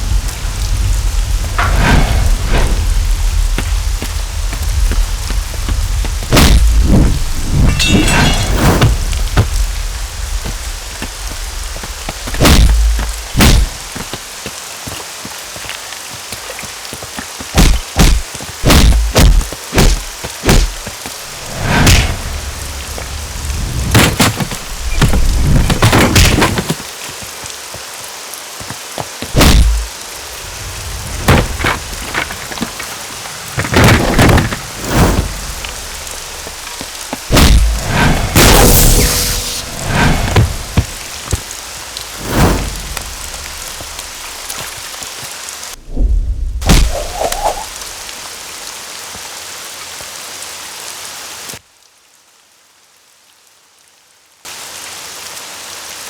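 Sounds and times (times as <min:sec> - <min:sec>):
steady hiss: 0:00.0 - 0:51.6
hit and thud sound effects: 0:01.5 - 0:14.1, 0:17.6 - 0:26.6, 0:29.4 - 0:29.9, 0:31.1 - 0:32.4, 0:33.6 - 0:44.6, 0:46.6 - 0:48.0.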